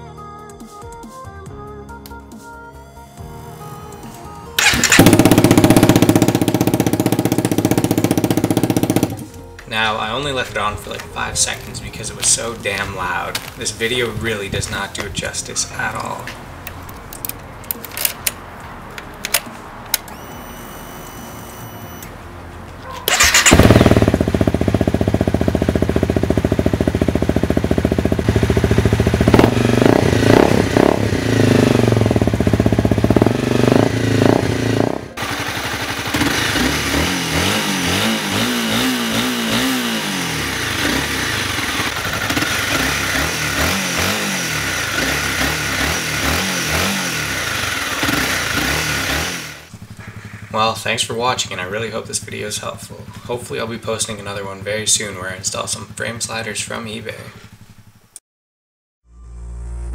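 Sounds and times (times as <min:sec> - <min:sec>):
exhaust revving: 0:04.6 - 0:09.4, 0:23.0 - 0:56.1
motorcycle engine running: 0:04.6 - 0:09.4, 0:22.8 - 0:58.1.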